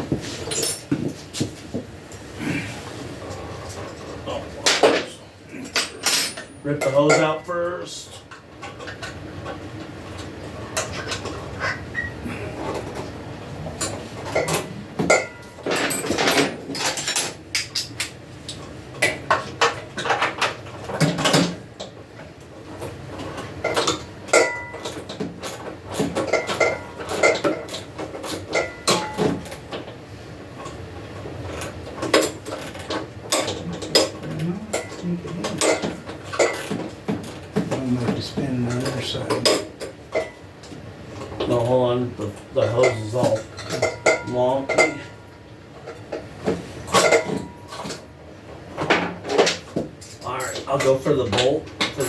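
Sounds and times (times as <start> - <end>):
metal tools and parts clanking: 0.3 - 1.2, 4.6 - 7.7, 13.8 - 18.1.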